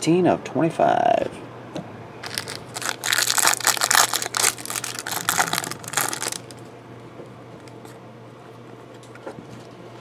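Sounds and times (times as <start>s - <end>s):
plastic packaging crinkling: 2.2s - 6.6s.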